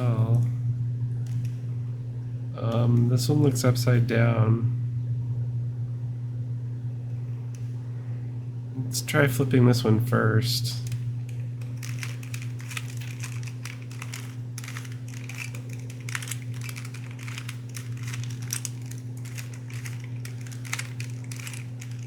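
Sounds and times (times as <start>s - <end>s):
low hum: 0.0s - 22.0s
puzzle cube plastic clicks: 11.7s - 22.0s.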